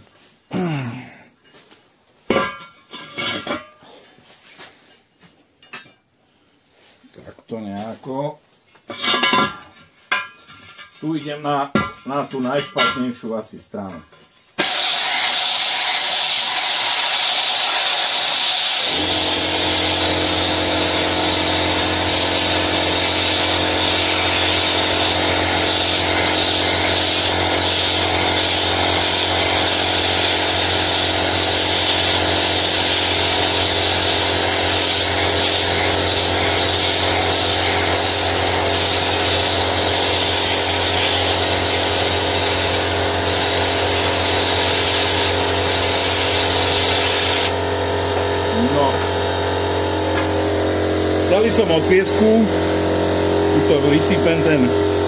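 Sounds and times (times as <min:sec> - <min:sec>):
air compressor humming: 0:14.6 - 0:55.0
sandblasting gun hissing: 0:14.6 - 0:55.0.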